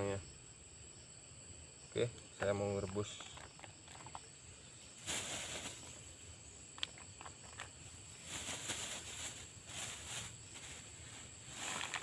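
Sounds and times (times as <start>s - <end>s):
insects droning: 0.0s - 12.0s
rustling and light clicks: 6.7s - 10.8s, 11.6s - 12.0s.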